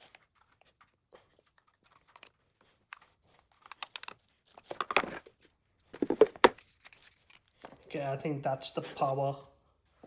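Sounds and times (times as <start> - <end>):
packaging crinkling and tearing: 3.0 - 7.6.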